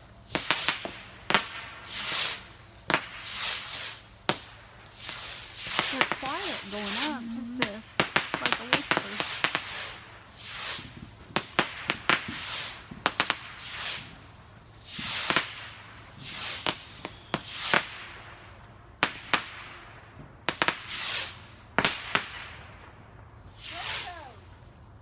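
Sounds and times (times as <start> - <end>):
firework cracks and pops: 0.0 - 24.7
firework launch whooshes: 0.3 - 18.4, 20.7 - 22.6, 23.5 - 24.7.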